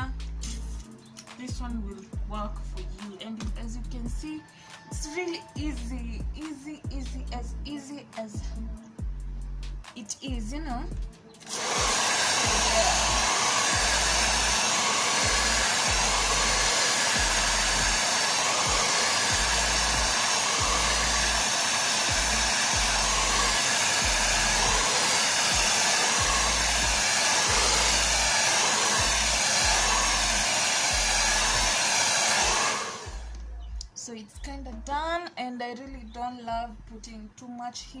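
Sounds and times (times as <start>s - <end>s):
blow dryer blowing air: 11.4s - 33.4s.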